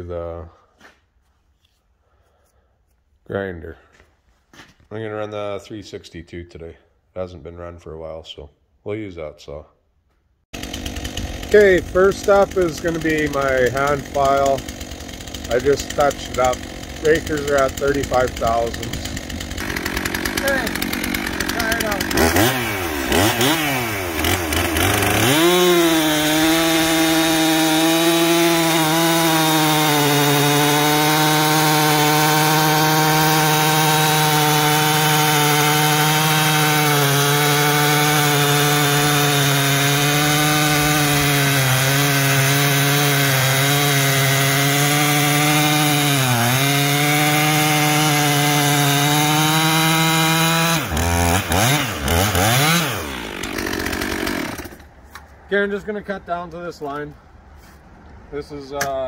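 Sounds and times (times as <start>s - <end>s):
chainsaw cutting through log: 10.5s - 54.9s.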